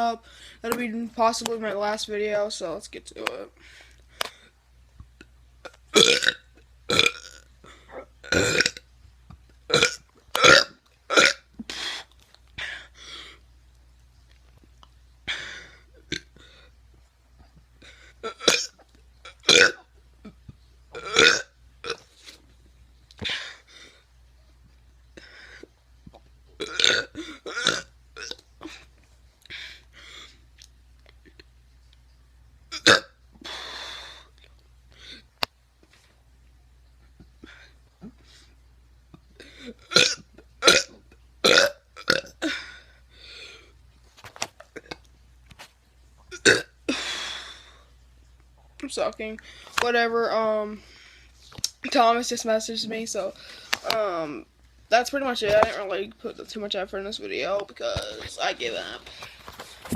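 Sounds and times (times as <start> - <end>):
person burping: 5.9 - 8.8, 9.7 - 11.5, 18.2 - 20.4, 21.0 - 22.0, 26.6 - 28.8, 32.7 - 33.2, 39.5 - 42.8, 46.3 - 47.0.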